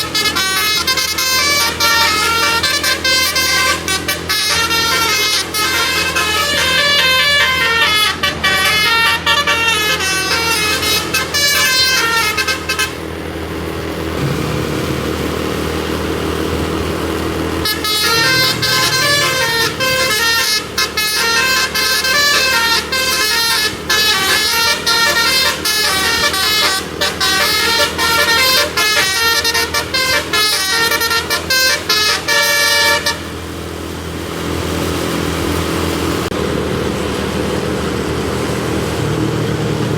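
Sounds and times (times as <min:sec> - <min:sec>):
multi-tone bus horn melodies: 0:00.0 - 0:13.5, 0:17.4 - 0:34.4
bus engine running: 0:00.0 - 0:39.9.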